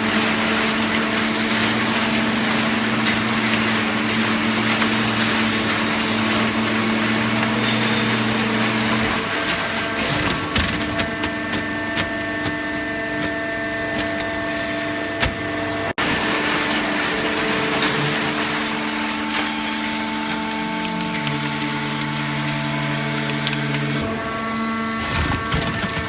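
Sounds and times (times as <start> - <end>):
baler machine hum: 0.0 - 26.0
sharp clicks and crackles: 19.2 - 24.1.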